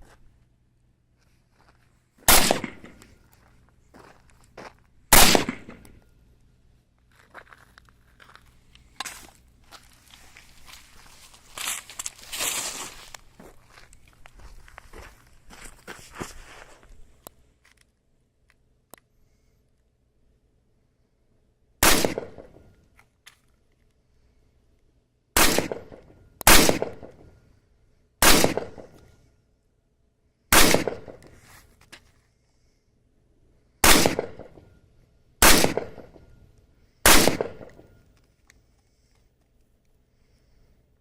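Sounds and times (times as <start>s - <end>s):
rifle shots with echo: 2.3s - 3.2s, 5.1s - 6.0s, 21.8s - 22.7s, 25.4s - 27.3s, 28.2s - 29.0s, 30.5s - 31.3s, 33.8s - 34.8s, 35.4s - 36.4s, 37.0s - 38.0s.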